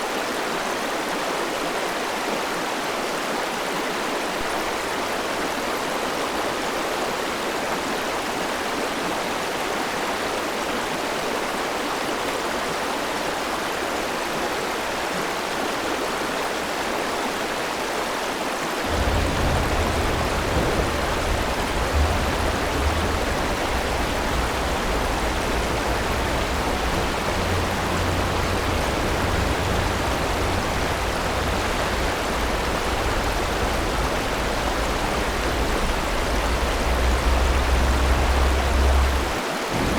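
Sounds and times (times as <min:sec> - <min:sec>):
river water rushing over stones: 0:13.3 - 0:39.9
low rumble: 0:18.9 - 0:39.9.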